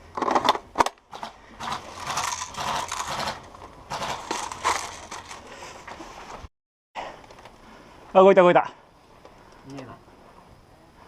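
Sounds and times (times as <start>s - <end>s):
electric toy gun firing bursts: 1.1s - 4.4s.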